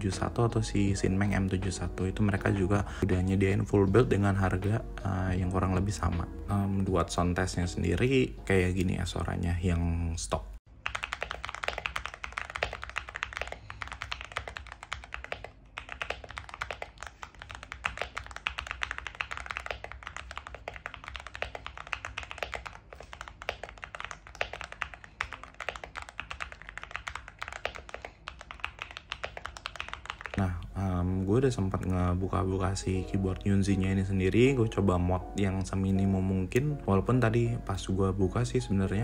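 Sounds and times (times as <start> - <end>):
mechanical keyboard typing: 10.8 - 36.7.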